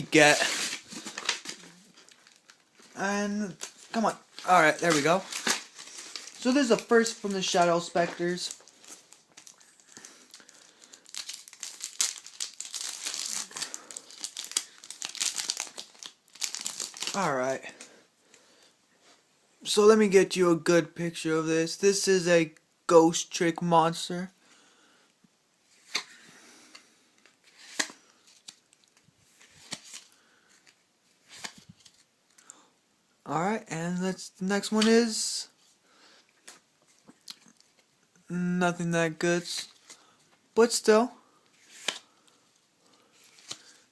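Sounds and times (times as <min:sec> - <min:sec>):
cards shuffled rustling: 0:00.0 - 0:17.2, 0:25.8 - 0:32.1, 0:39.4 - 0:40.0, 0:40.7 - 0:43.9
foil wrapper crinkling: 0:03.5 - 0:17.3.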